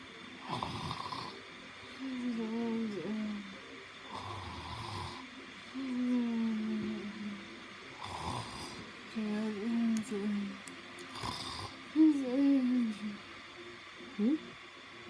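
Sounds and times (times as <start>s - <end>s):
pitched wavering snores: 0.4s - 1.4s
rasping snoring breaths: 0.4s - 1.4s, 4.1s - 5.3s, 8.0s - 8.9s, 11.1s - 11.8s.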